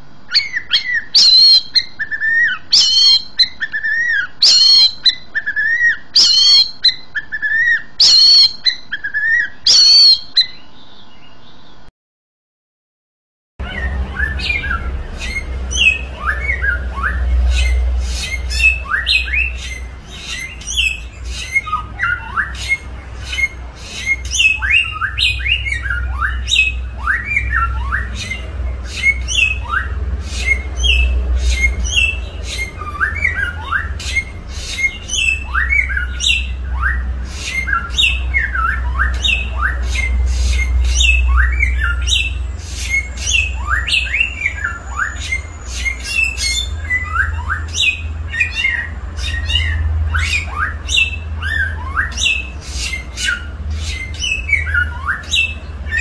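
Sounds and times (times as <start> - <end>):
songbird singing: 0.2 - 11.9, 13.6 - 56.0
steady low hum: 13.6 - 56.0.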